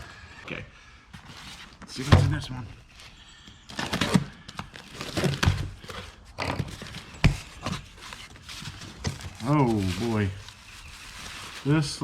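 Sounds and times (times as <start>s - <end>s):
box knocks and scuffs: 1.9s - 2.5s, 5.0s - 9.5s.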